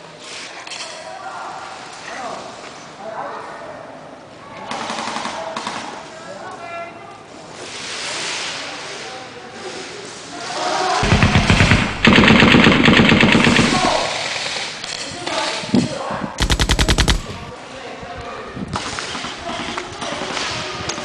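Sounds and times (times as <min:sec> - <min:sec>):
airsoft guns firing full auto: 0:11.0 - 0:14.7, 0:16.4 - 0:17.5.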